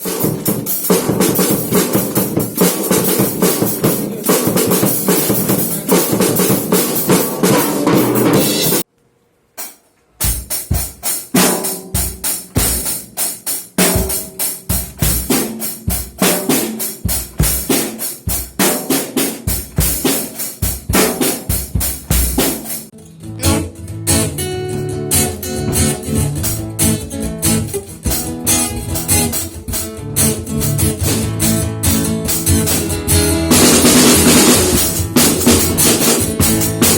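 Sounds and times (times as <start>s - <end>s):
drum kit playing loudly: 0.0s - 8.9s, 9.6s - 36.9s
pitched instruments playing: 22.9s - 31.0s.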